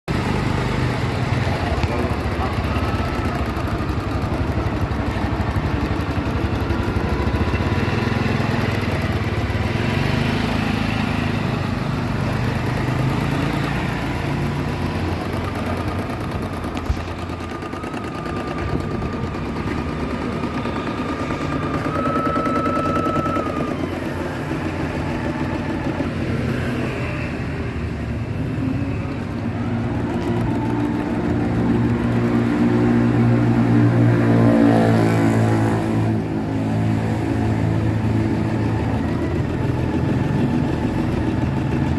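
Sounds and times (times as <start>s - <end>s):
embroidery machine running: 0.1s - 41.9s
whining tone: 1.4s - 41.9s.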